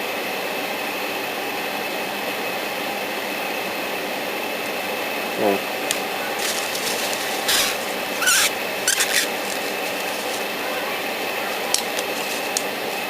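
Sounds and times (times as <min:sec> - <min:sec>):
steady background hiss: 0:00.0 - 0:13.0
airbrush hissing bursts: 0:06.4 - 0:10.6.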